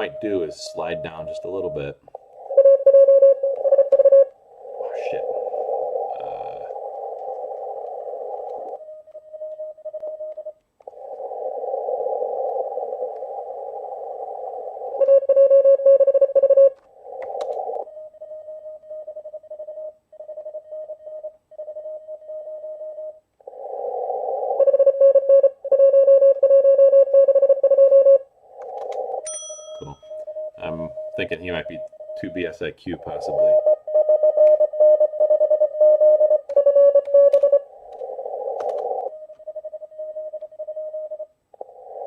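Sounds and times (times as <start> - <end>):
louder morse code tone: 0.0 - 7.3, 29.3 - 37.8
morse code tone beeping: 0.0 - 10.5, 29.3 - 41.3
radio band noise hiss: 4.6 - 7.6.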